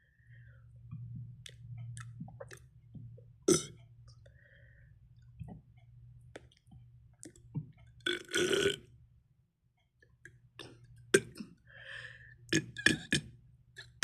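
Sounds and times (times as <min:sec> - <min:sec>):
faint low hum: 0:00.0 - 0:14.0
mouth clicks and wet smacks: 0:00.9 - 0:03.2
sharp throat sound: 0:12.5 - 0:13.3.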